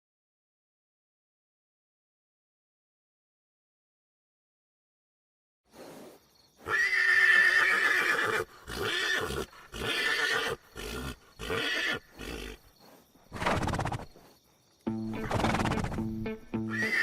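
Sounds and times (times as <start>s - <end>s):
horse whinnying: 6.6s - 12.6s, 15.2s - 16.0s, 16.7s - 17.0s.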